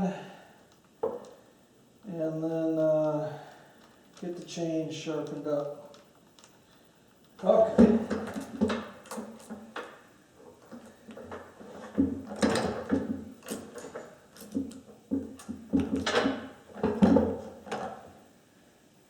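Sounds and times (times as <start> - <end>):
knocks and scrapes of parts: 0.9 - 1.4, 7.3 - 18.2
tools handled and set down: 1.0 - 1.4, 7.4 - 18.2.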